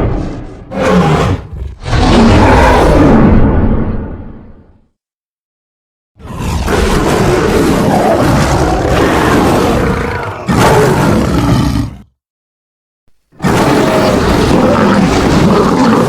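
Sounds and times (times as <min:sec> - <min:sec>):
creature roaring: 0:00.0 - 0:03.6, 0:06.2 - 0:12.2, 0:13.4 - 0:16.0.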